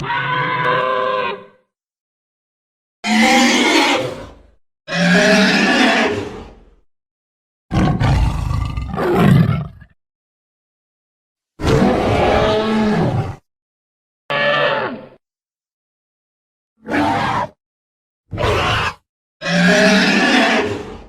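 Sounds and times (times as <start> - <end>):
dinosaur roars: 7.7 - 10.0, 11.6 - 13.4, 18.3 - 21.0.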